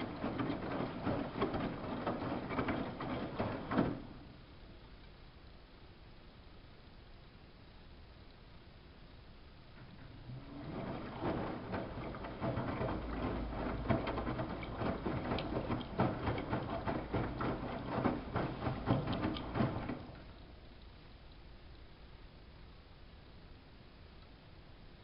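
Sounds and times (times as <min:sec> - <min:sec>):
washing machine drum knocking: 0:00.0 - 0:04.2, 0:09.9 - 0:20.4
water sloshing in washing machine: 0:00.0 - 0:04.3, 0:09.8 - 0:20.6.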